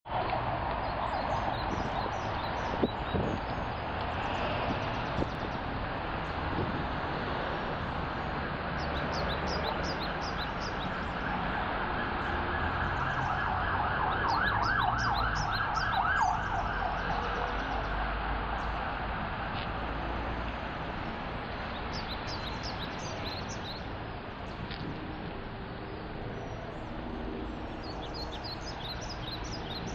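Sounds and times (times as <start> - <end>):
street traffic rumbling: 0.0 - 29.9
emergency vehicle siren: 0.1 - 3.8, 8.2 - 20.0
small birds chirping: 0.8 - 6.4, 8.1 - 11.2, 21.5 - 25.2, 27.5 - 29.9.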